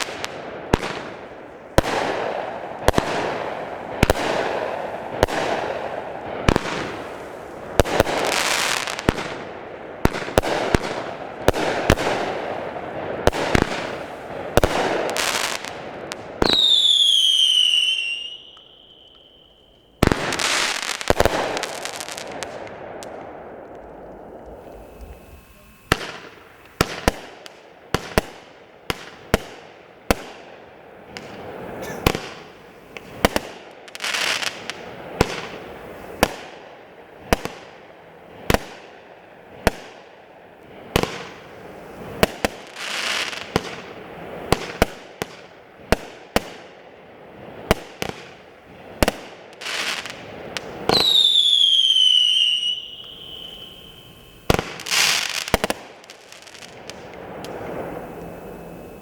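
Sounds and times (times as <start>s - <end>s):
firework launch shots: 0.0s - 30.5s, 49.0s - 59.0s
firework crackle bursts: 0.0s - 59.0s
falling firework whistle: 16.3s - 27.4s, 49.6s - 59.0s.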